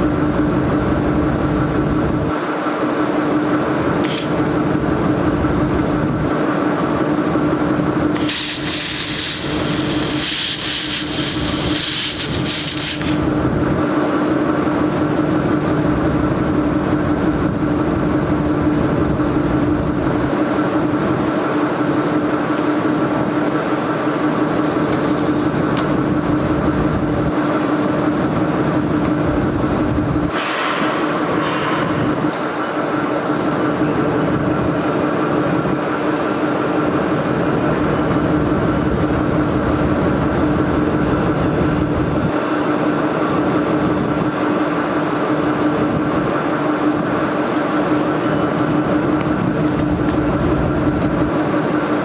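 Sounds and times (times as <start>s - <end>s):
welding machine hum: 0.0s - 33.6s
welding gun hiss: 4.0s - 5.0s, 8.1s - 13.5s, 24.8s - 33.5s.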